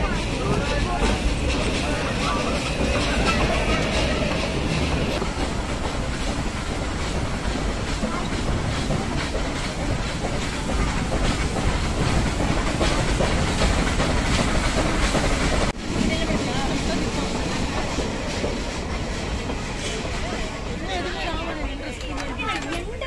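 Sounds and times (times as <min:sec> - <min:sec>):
train rumble: 0:00.0 - 0:23.0
wheels clattering over rails: 0:00.0 - 0:23.0.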